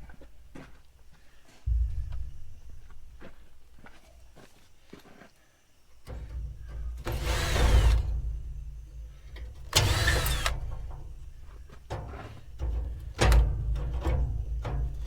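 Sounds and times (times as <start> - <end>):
power drill motor whine: 7.0 - 8.7, 9.7 - 10.9.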